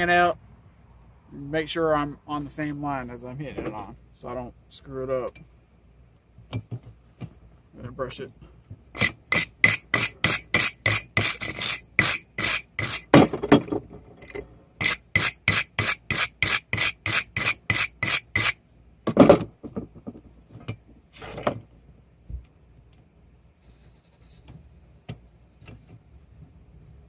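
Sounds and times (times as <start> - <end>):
wire brush scrubbing metal: 9.0 - 13.1, 14.8 - 18.6.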